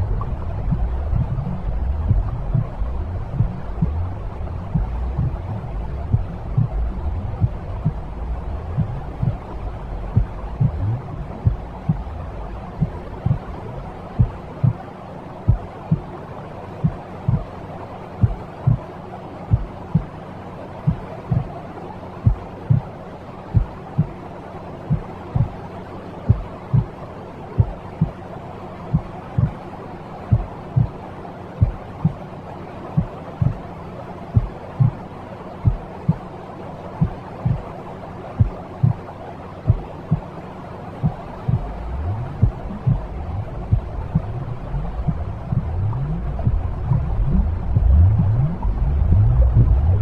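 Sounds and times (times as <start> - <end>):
white noise hiss: 0.0 - 50.0
heartbeat double thump: 0.1 - 9.5, 10.1 - 13.6, 14.2 - 14.8, 18.2 - 18.8, 23.6 - 24.1, 35.6 - 36.2, 41.0 - 50.0.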